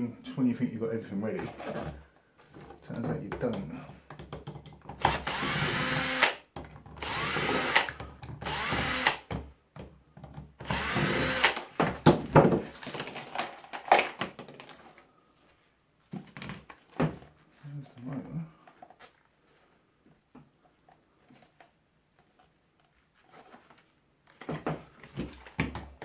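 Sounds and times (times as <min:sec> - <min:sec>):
parts knocking and rattling: 0:01.4 - 0:05.6
power drill whirring: 0:05.0 - 0:06.4, 0:07.0 - 0:09.3, 0:10.6 - 0:11.8.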